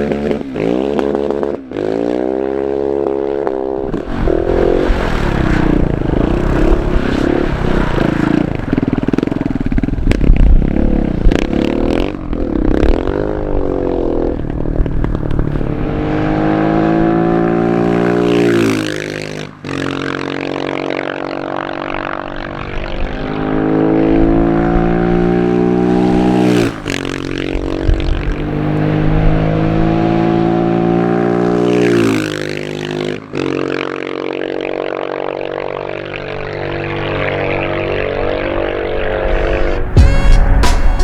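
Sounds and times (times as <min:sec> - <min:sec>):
motorcycle engine accelerating: 0:00.0 - 0:41.0
music with drums: 0:40.0 - 0:41.0.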